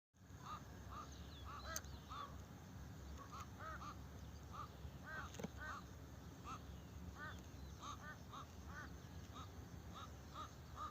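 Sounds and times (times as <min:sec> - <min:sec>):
steady low rumble: 0:00.2 - 0:10.9
crows cawing: 0:03.2 - 0:10.9.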